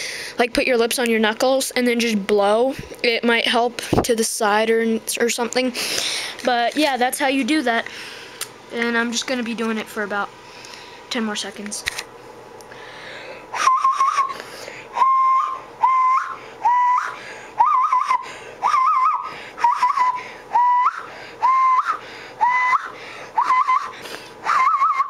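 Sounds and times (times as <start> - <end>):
hand whistle hooting: 13.5 - 14.4, 15.0 - 25.0.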